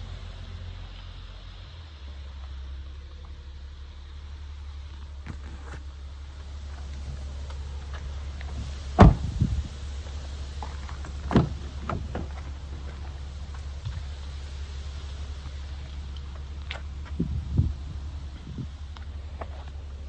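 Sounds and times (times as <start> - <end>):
steady low hum: 0.0 - 20.0
truck door thudding shut: 8.9 - 9.7, 11.0 - 12.5.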